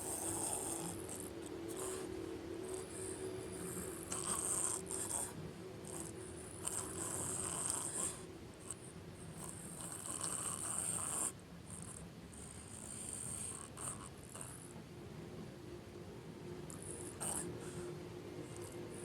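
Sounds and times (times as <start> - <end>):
person snoring heavily: 0.0 - 8.2.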